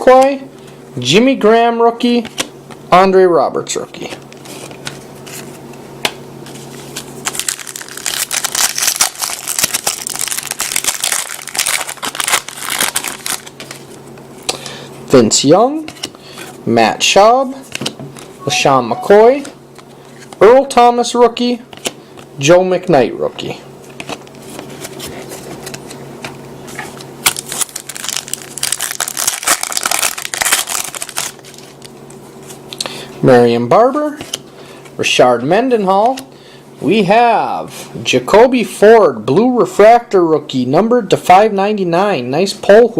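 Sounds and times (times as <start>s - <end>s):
wrapper tearing and crinkling: 7.2s - 14.0s, 27.2s - 31.9s.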